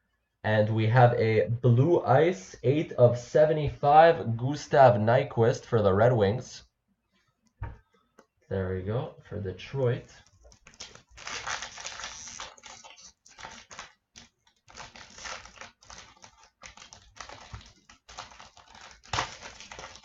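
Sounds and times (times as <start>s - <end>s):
cards clicking and rustling: 10.2s - 20.0s
wrapper crinkling and tearing: 10.2s - 20.0s.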